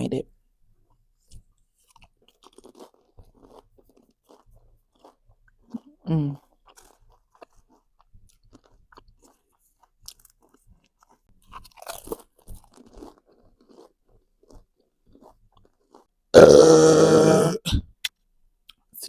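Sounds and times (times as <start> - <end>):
chewing and crunching food: 0.7 - 17.2
loud burp: 16.3 - 17.8.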